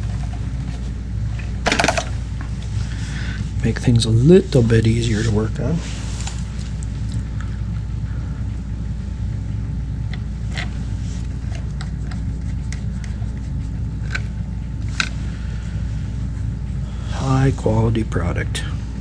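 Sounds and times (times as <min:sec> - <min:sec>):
workshop background hum: 0:00.0 - 0:19.0.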